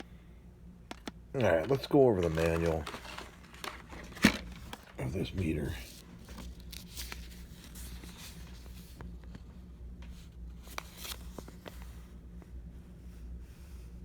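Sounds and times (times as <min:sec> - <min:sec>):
low steady hum: 0:00.0 - 0:14.0
paper rustling: 0:01.4 - 0:09.4, 0:10.0 - 0:12.1.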